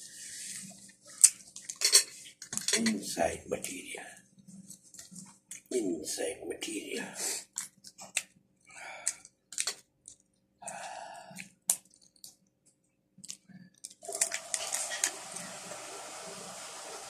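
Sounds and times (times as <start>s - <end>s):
wet squishing and chewing: 1.1s - 1.7s, 7.4s - 8.3s, 9.0s - 12.4s, 13.2s - 15.2s
steady hiss: 14.1s - 17.0s.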